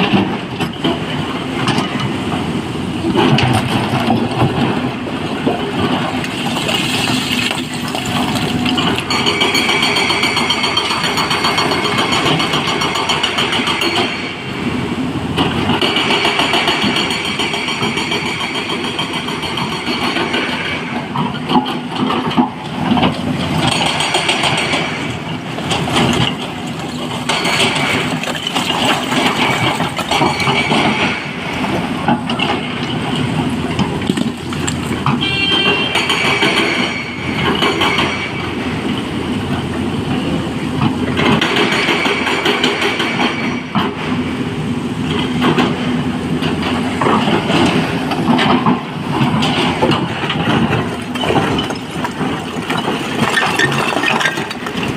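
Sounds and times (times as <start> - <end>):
diesel excavator running: 0.0 - 54.9
rock and metal clattering: 46.7 - 54.9.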